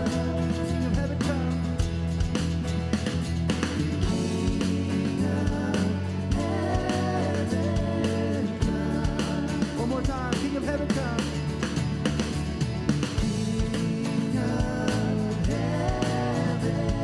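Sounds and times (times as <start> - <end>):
person singing: 0.0 - 1.6, 4.0 - 11.0, 13.3 - 17.0
live band with drums bass guitar: 0.0 - 17.0.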